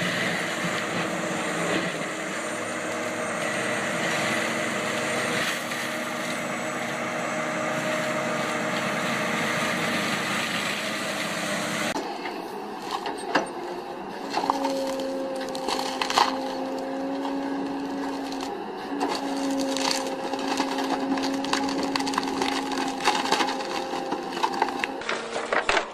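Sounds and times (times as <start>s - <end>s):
heavy machinery grinding: 0.0s - 25.9s
wood splintering cracks: 14.3s - 25.9s.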